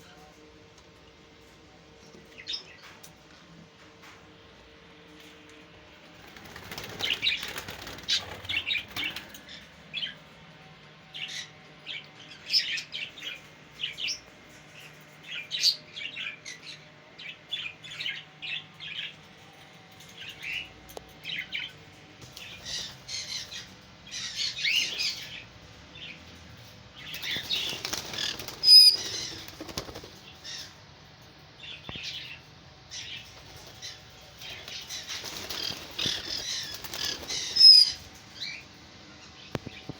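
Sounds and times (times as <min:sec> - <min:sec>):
wing flapping: 0:06.2 - 0:09.4, 0:27.1 - 0:30.3, 0:33.3 - 0:38.0
parrots chirping: 0:27.1 - 0:29.9, 0:34.5 - 0:38.1.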